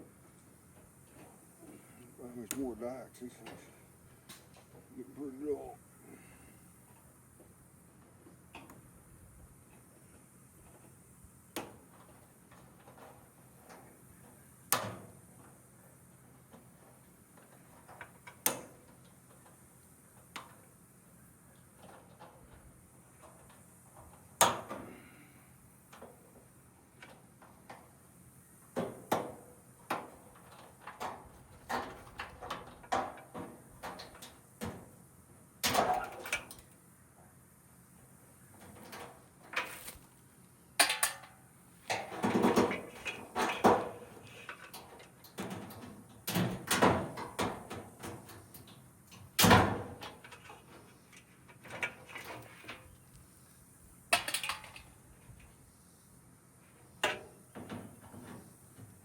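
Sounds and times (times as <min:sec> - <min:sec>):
scrap metal clanking and scraping: 0:41.9 - 0:48.2.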